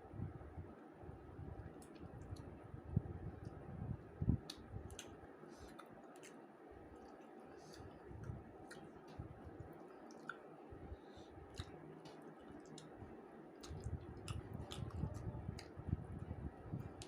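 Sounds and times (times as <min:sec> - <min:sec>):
wet chewing: 0:04.4 - 0:06.4, 0:07.0 - 0:10.5, 0:11.4 - 0:13.0, 0:13.6 - 0:15.8.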